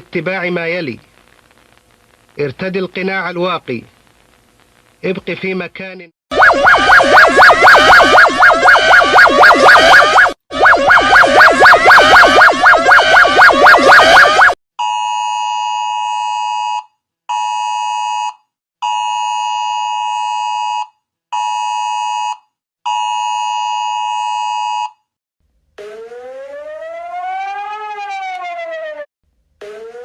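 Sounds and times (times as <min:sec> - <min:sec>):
buzzy electronic alarm tone: 0:06.3 - 0:14.6
siren rising and falling: 0:06.3 - 0:14.6, 0:25.8 - 0:30.0.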